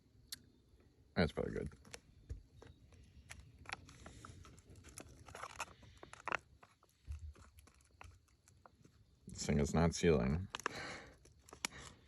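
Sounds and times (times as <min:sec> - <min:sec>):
plastic pouch rustling: 0:01.8 - 0:09.0, 0:10.4 - 0:12.0.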